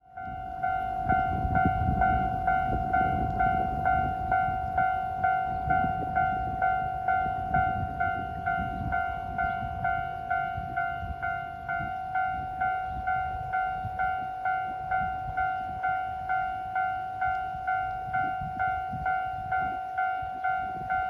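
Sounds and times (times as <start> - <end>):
low rumble: 0.0 - 14.0
level-crossing alarm ringing: 0.0 - 21.0.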